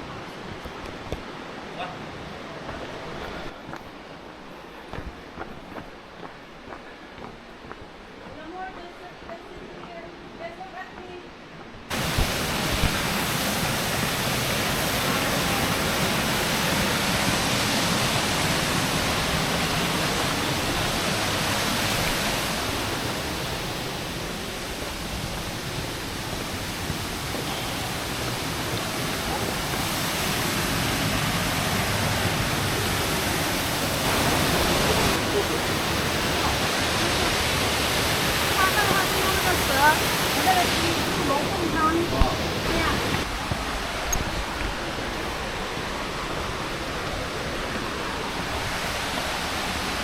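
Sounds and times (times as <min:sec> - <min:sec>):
waterfall roaring: 0:11.9 - 0:50.0.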